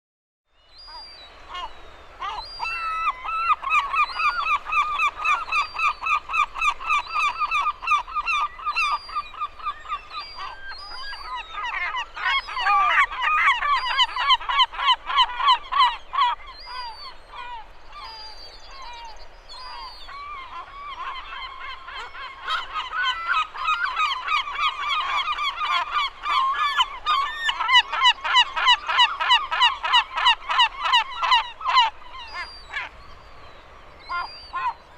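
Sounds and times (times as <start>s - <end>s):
seagull calling: 0.8s - 34.9s.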